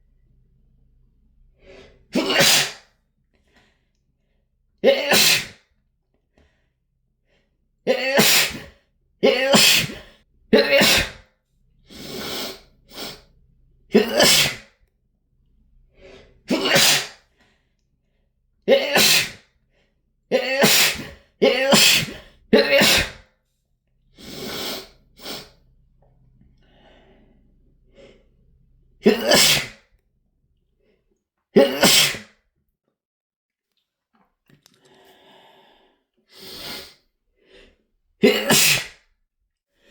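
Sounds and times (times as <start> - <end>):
in-breaths: 1.6 - 2.1, 3.2 - 4.5, 6.3 - 7.6, 15.9 - 16.5, 17.2 - 18.4, 19.6 - 20.0, 26.4 - 28.6, 34.6 - 37.9
person sneezing: 2.1 - 2.9, 4.8 - 5.6, 7.9 - 11.3, 13.9 - 14.7, 16.5 - 17.2, 18.7 - 19.5, 20.4 - 23.3, 29.0 - 29.8, 31.6 - 32.4, 38.2 - 39.0.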